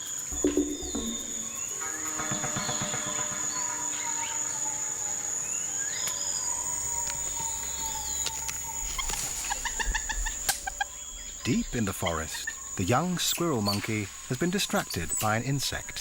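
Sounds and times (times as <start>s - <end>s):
bird calls: 0.0s - 16.0s
high-pitched insect drone: 0.0s - 16.0s.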